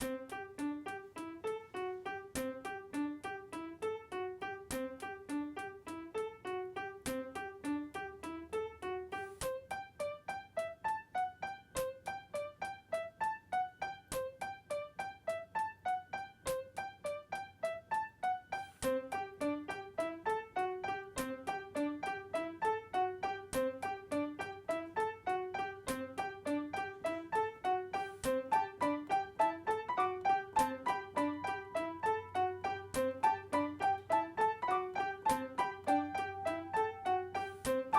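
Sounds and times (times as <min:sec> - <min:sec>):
piano single notes: 0:15.9 - 0:37.9.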